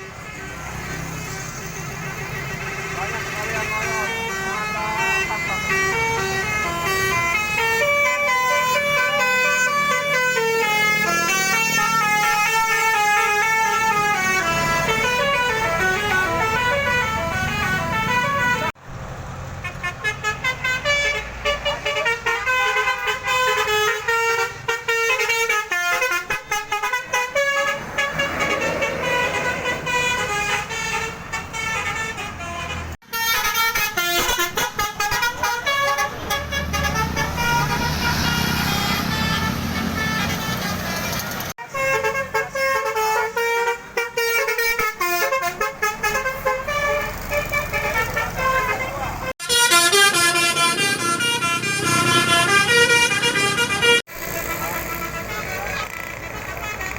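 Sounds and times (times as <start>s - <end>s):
multi-note air horn tunes: 19.7s - 56.9s.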